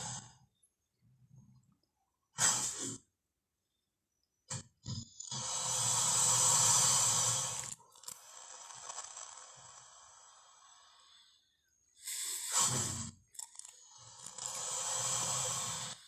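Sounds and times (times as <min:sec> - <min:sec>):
long breathy hiss: 0:00.0 - 0:00.5, 0:02.4 - 0:03.1, 0:05.1 - 0:16.0
creature hissing growl: 0:05.3 - 0:07.7, 0:12.1 - 0:13.2, 0:14.3 - 0:16.0.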